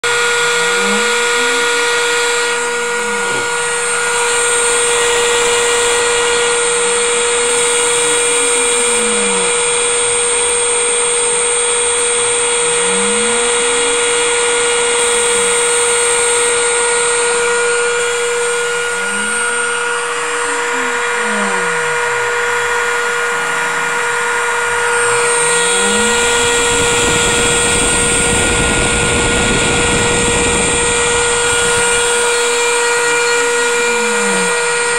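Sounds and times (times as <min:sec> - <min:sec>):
constant motor whine: 0:00.0 - 0:34.9.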